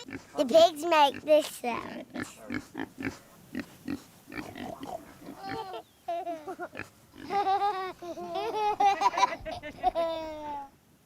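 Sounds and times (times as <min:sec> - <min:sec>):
pigs grunting and oinking: 0:00.0 - 0:00.4, 0:01.1 - 0:05.9.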